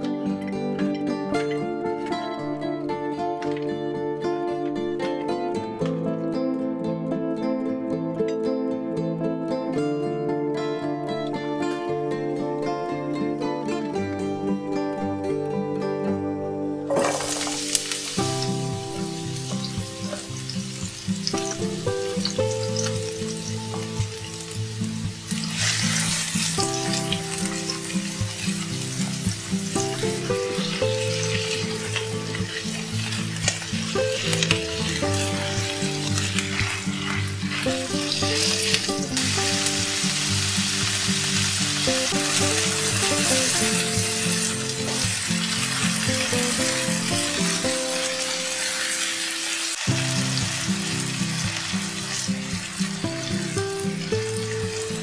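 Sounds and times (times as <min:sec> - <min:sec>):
instrumental background music: 0:00.0 - 0:55.0
food sizzling in a pan: 0:16.8 - 0:55.0.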